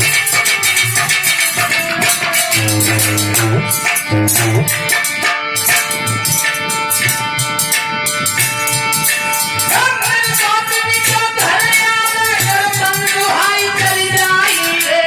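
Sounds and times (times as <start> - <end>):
jingling hand percussion: 0.0 - 15.0
person singing: 2.6 - 4.7
drum beat: 2.6 - 4.9
held melody notes: 2.6 - 4.9.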